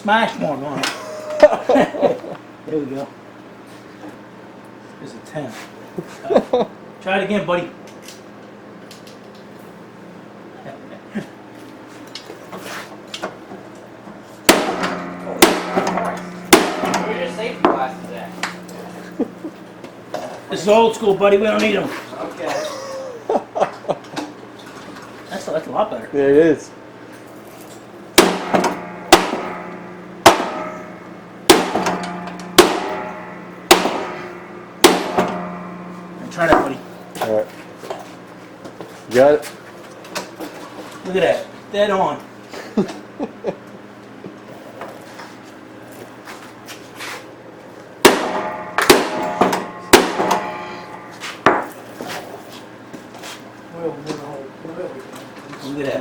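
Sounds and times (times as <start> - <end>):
sledgehammer striking steel: 14.5 - 19.8, 28.2 - 38.4, 48.0 - 51.9
metallic ring: 14.5 - 21.8, 27.4 - 39.2, 48.0 - 52.6.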